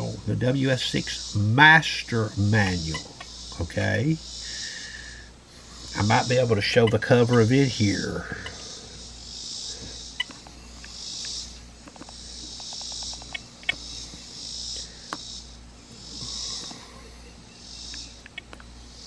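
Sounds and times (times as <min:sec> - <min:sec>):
insect chorus pulsing hiss: 0:00.0 - 0:19.0
sharp clicks: 0:09.8 - 0:14.2, 0:17.9 - 0:18.7.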